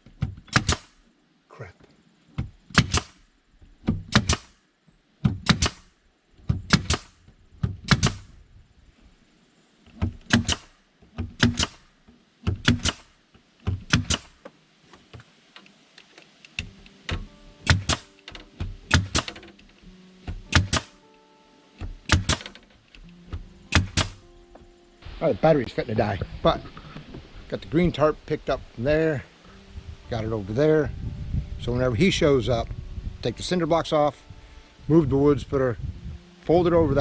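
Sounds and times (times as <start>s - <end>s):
nails hammered into wood: 0.1s - 1.0s, 2.4s - 3.2s, 3.8s - 4.6s, 5.2s - 5.9s, 6.5s - 8.3s, 10.0s - 11.8s, 12.4s - 14.4s, 16.6s - 19.5s, 20.2s - 21.0s, 21.8s - 22.6s, 23.3s - 24.2s.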